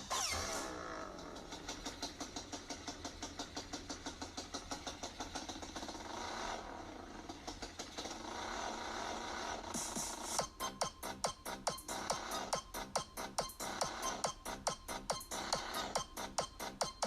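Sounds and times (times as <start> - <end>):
electronic dance music: 9.6 - 17.0.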